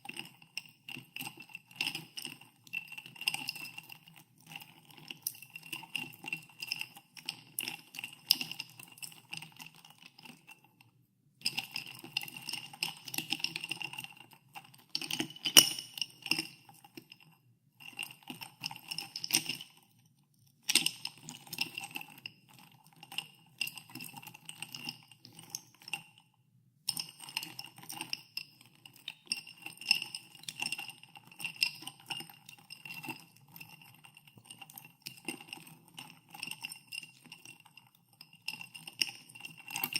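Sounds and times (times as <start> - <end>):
ice cubes clinking in a glass: 15.0 - 16.4.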